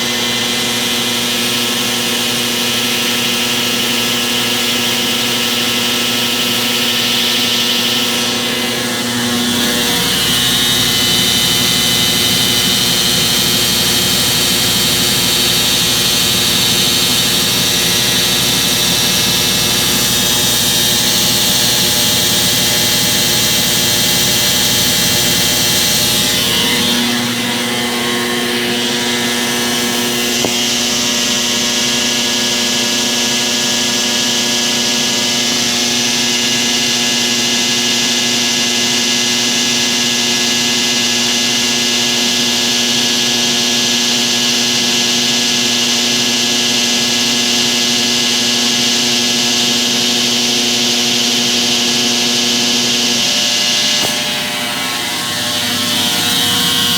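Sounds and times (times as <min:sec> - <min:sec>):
high whine: 0:05.7 - 0:31.9
washing machine spinning: 0:05.9 - 0:31.5.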